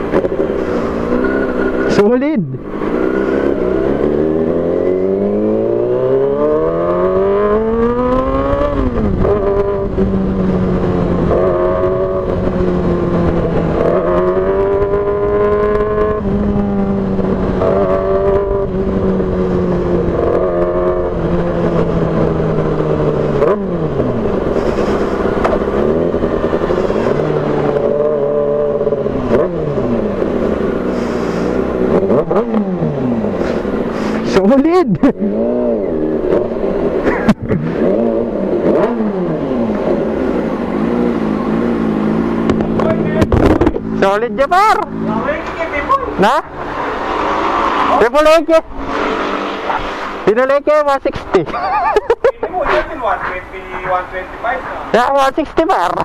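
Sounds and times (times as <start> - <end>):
motorcycle engine revving: 0.0 - 56.0
wind noise: 2.5 - 31.4, 35.0 - 44.7.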